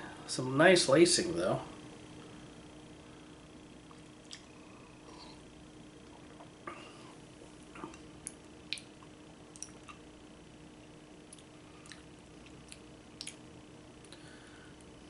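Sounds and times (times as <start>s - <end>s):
small mouth clicks: 3.9s - 4.5s, 7.8s - 10.0s, 11.3s - 13.4s.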